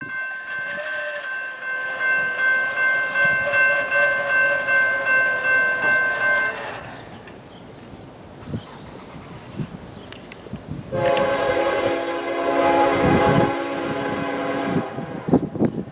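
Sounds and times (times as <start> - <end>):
train knocks: 0.0 - 7.4
train rumble: 0.0 - 15.9
locomotive air horn chord: 11.0 - 15.3.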